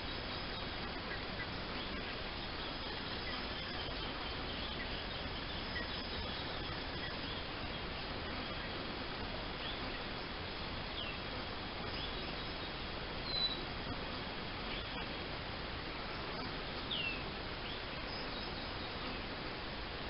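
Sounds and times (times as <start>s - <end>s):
background hiss: 0.0s - 20.0s
short high bird calls: 13.2s - 13.7s.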